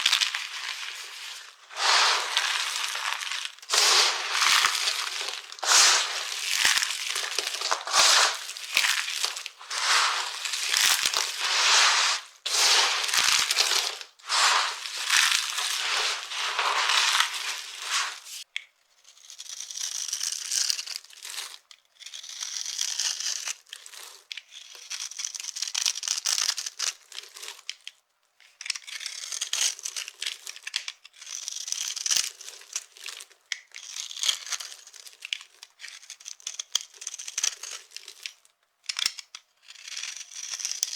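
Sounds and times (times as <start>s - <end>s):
dry soap crunching: 0.0s - 18.4s
soap being cut scraping: 0.0s - 18.4s.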